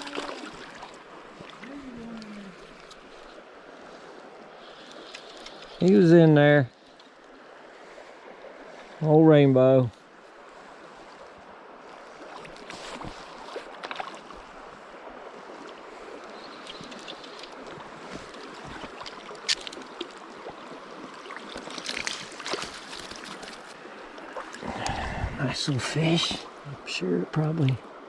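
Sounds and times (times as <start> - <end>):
stream water running: 0.0 - 28.0
small splashes and taps: 12.3 - 14.3, 16.6 - 20.6, 21.2 - 23.8.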